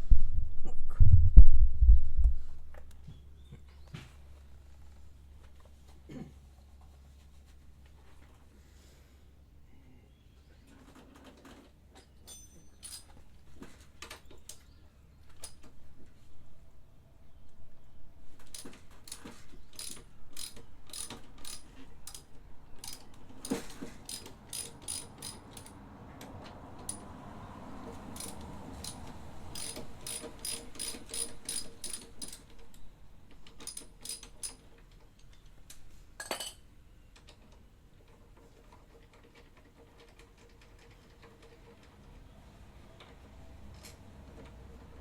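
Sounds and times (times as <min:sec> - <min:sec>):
ratchet wrench clicking: 0:18.5 - 0:25.8, 0:28.1 - 0:32.5, 0:33.5 - 0:34.6.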